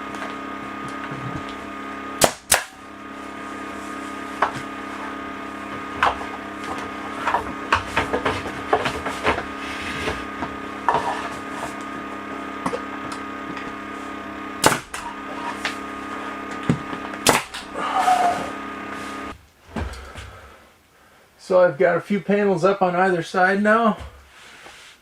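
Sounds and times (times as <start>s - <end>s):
steady hum: 0.0s - 24.6s
pneumatic stapler shots: 2.2s - 2.8s, 14.6s - 15.1s, 17.2s - 17.7s.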